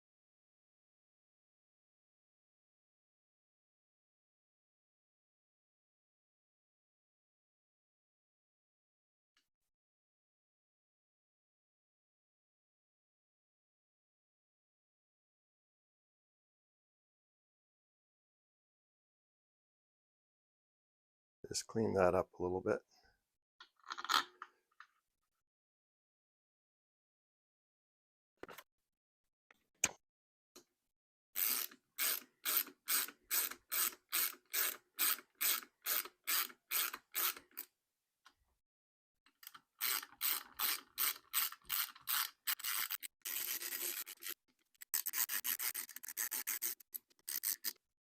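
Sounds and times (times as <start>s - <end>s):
hand ratchet clicking: 31.4s - 37.6s, 39.4s - 47.8s.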